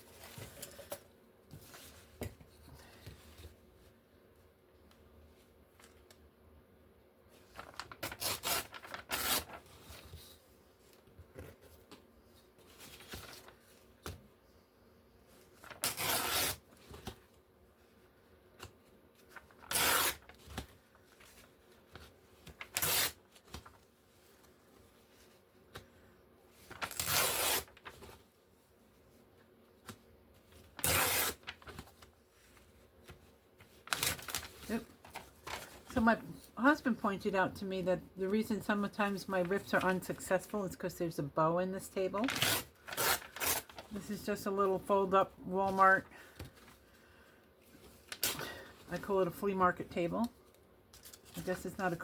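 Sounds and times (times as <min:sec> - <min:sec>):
paper rustling: 0:07.4 - 0:12.0, 0:26.5 - 0:28.3, 0:29.8 - 0:36.1, 0:42.2 - 0:47.0
paper tearing: 0:07.6 - 0:09.6, 0:15.6 - 0:16.6, 0:19.3 - 0:20.6, 0:22.6 - 0:23.3, 0:26.7 - 0:28.1, 0:30.8 - 0:32.0, 0:42.2 - 0:43.9.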